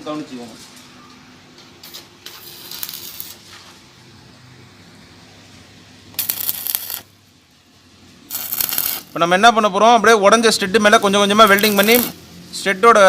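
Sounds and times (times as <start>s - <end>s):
welding arc crackling: 1.8s - 3.8s, 6.1s - 7.2s, 8.1s - 9.4s, 10.8s - 12.4s.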